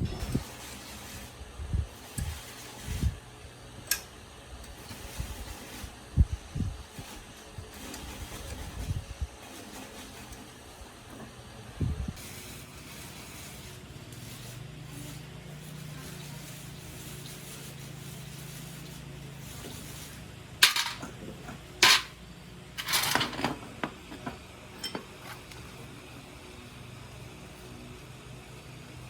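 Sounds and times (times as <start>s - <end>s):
metal objects clinking: 20.6s - 21.2s, 21.8s - 22.2s, 22.8s - 23.6s.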